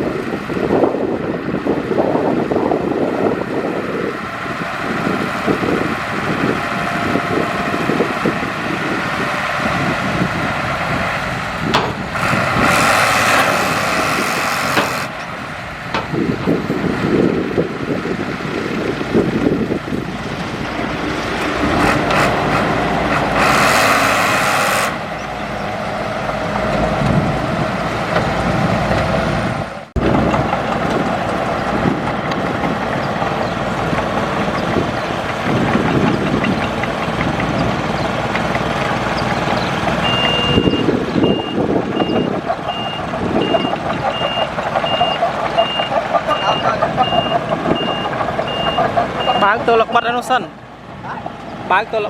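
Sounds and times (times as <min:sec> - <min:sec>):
heavy machinery engine running: 0:00.0 - 0:52.0
reversing alarm beeping: 0:40.0 - 0:49.7.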